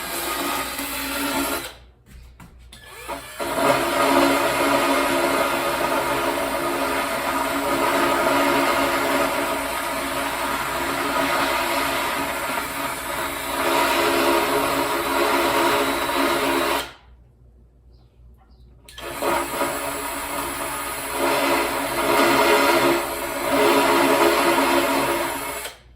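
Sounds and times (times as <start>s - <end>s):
cordless drill motor whine: 2.8s - 17.0s.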